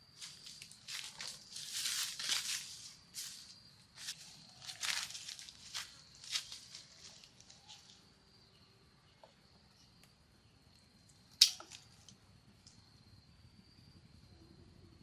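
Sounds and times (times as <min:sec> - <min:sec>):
high insect drone: 0:00.0 - 0:15.0
crackling clicks of leaves and twigs: 0:00.2 - 0:03.4, 0:04.0 - 0:08.0, 0:11.1 - 0:12.8
sharp loud snap: 0:11.4 - 0:11.7.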